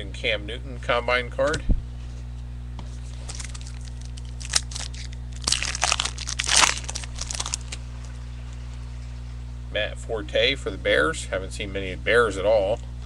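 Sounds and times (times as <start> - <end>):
low steady hum: 0.0 - 13.0
wrapper crinkling: 3.0 - 8.2.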